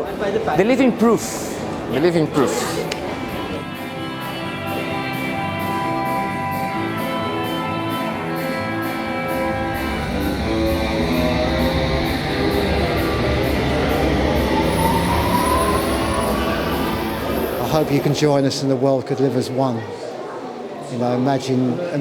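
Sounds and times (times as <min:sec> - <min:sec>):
underground train rumbling: 0:00.0 - 0:04.1, 0:08.8 - 0:18.3
guitar playing: 0:01.6 - 0:18.2.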